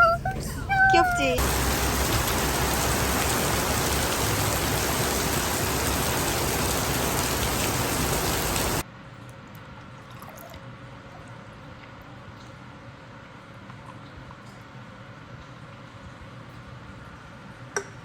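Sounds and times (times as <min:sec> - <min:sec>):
rushing water: 0:00.0 - 0:08.8.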